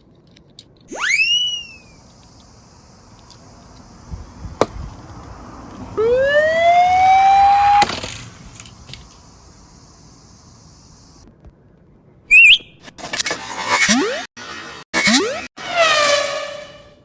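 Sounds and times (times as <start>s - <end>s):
police siren winding up: 0.9s - 2.6s, 6.0s - 8.1s.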